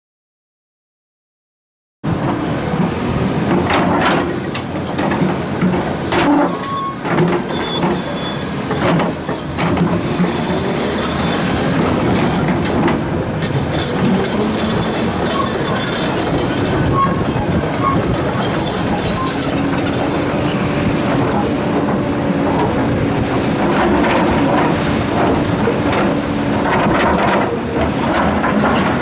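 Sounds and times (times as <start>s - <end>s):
diesel engines running: 2.1s - 29.0s
high metallic squeaks: 6.4s - 11.8s, 13.7s - 21.9s.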